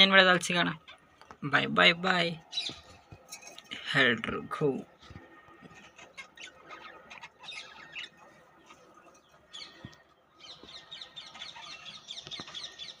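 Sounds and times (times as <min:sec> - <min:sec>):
budgerigars chirping: 0:02.5 - 0:03.0, 0:05.6 - 0:13.0.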